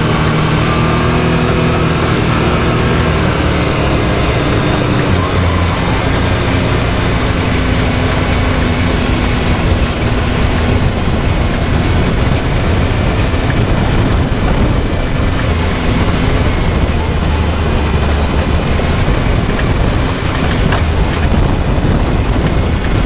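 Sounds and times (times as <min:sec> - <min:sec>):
tyre chassis and wind rumble: 0:00.0 - 0:23.0
vehicle engine running: 0:00.0 - 0:23.0.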